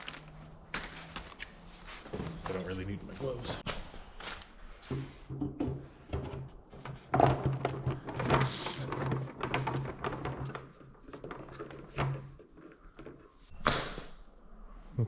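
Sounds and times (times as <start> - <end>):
packaging rustling: 0.0 - 3.5
knocks and clatters: 4.9 - 13.3.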